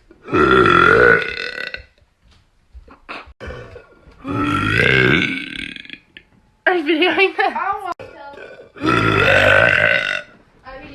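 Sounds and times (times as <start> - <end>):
person burping: 0.2 - 2.0, 3.0 - 6.2, 8.0 - 10.3.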